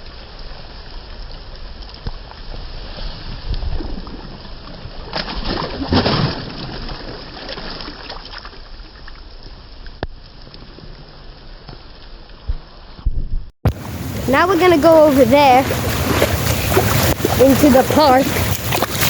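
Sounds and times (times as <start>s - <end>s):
rain and wind hiss: 0.0s - 3.7s, 13.7s - 19.0s
heavy splash into water: 5.0s - 8.4s, 13.7s - 19.0s.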